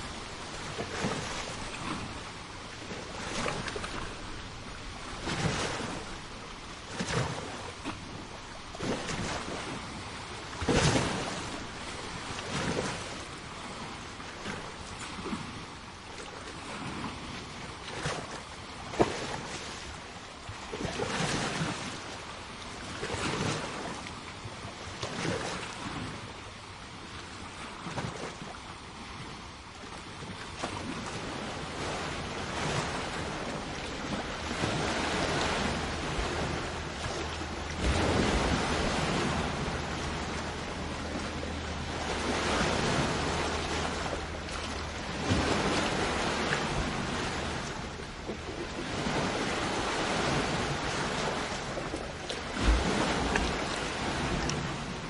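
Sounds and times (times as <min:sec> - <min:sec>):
sea waves washing onto shore: 0:00.0 - 0:55.0.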